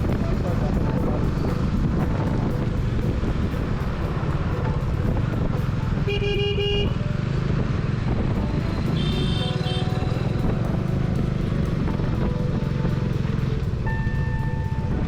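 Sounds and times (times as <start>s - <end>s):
motorcycle engine running: 0.0s - 15.0s
higher-pitched horn: 6.0s - 7.2s, 8.6s - 11.0s
vehicle horn honking: 6.0s - 7.2s, 8.7s - 10.4s.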